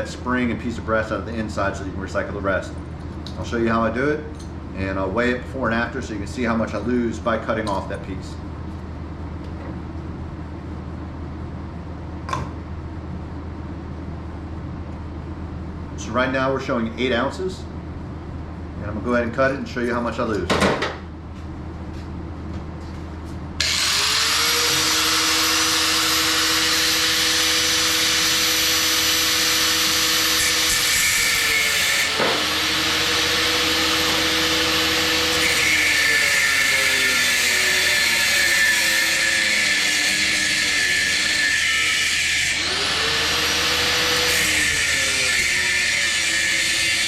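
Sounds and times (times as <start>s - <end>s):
cut-off wheel cutting metal: 23.6s - 47.0s.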